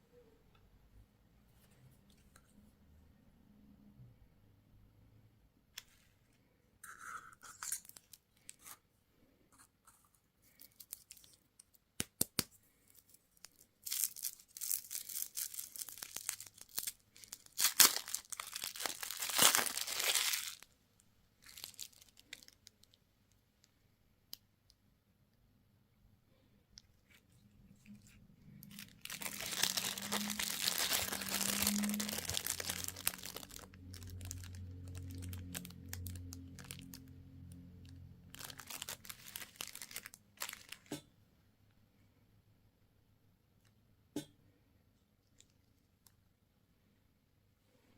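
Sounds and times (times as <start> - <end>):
plastic wrappers crinkling and tearing: 7.4 - 8.8, 10.5 - 20.7, 21.4 - 23.0, 27.0 - 40.9.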